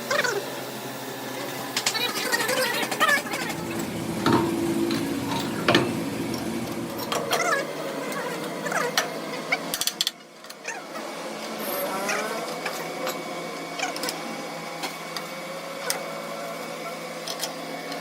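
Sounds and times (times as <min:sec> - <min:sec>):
low hum: 0:03.1 - 0:07.5
short squeaks: 0:03.1 - 0:07.5.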